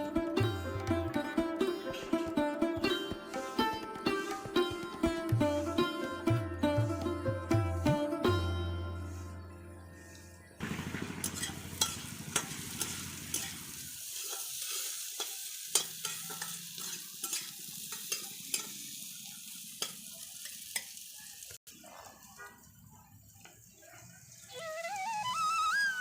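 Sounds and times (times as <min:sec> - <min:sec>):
food sizzling in hot oil: 0:11.2 - 0:21.6
spatula clicking and scraping pan: 0:11.3 - 0:18.9.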